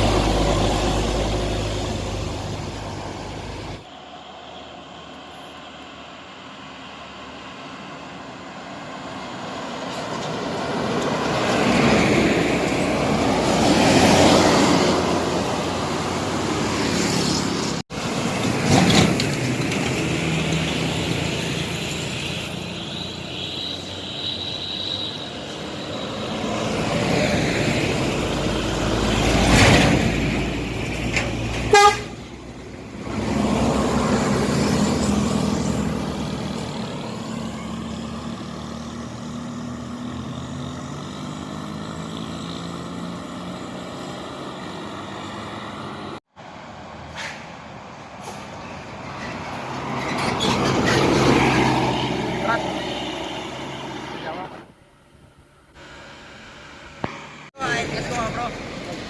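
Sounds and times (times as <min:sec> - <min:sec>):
buses passing: 0:00.0 - 0:59.0
multi-tone bus horns: 0:22.0 - 0:26.0, 0:31.6 - 0:32.3.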